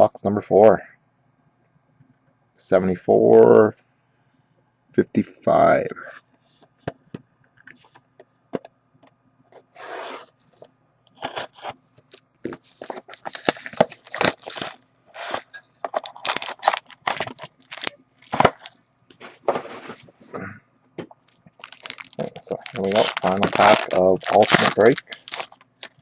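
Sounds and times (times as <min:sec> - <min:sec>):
tearing and crinkling packaging: 0:12.6 - 0:19.9, 0:21.3 - 0:26.0.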